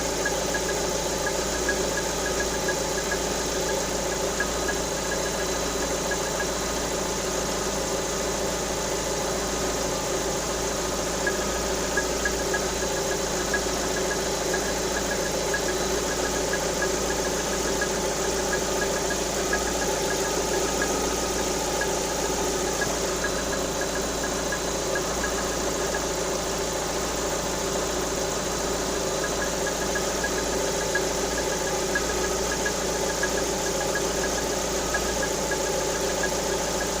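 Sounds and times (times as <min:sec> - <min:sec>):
car engine idling: 0:00.0 - 0:37.0
fast even engine tapping: 0:11.0 - 0:37.0.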